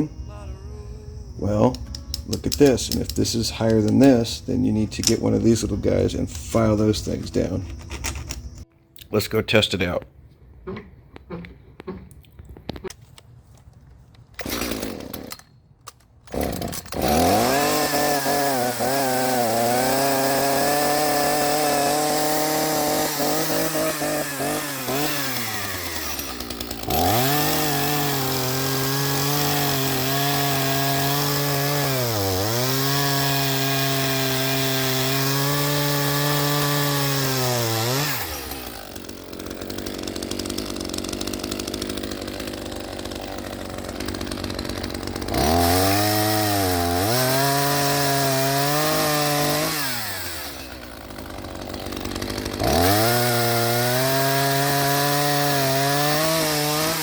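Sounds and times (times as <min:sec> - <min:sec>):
chainsaw running at high revs: 0:14.4 - 0:15.4, 0:16.3 - 0:57.0.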